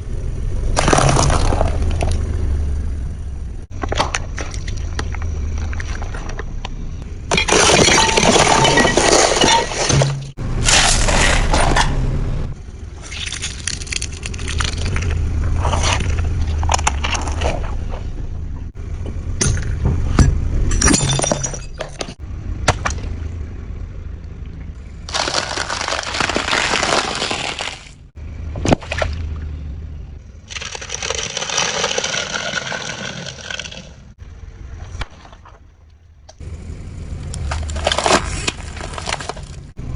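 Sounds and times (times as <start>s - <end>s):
low rumble: 0.0s - 26.5s
brittle objects crunching under wheels: 0.6s - 2.5s, 3.7s - 12.0s, 12.8s - 18.7s, 24.8s - 29.4s, 30.3s - 39.9s.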